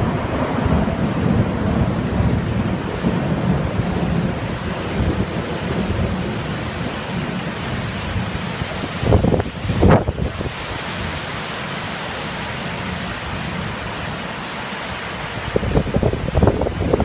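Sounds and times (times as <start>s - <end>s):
thunder rumbling: 0.0s - 11.2s, 15.4s - 17.0s
heavy rain: 0.0s - 17.0s.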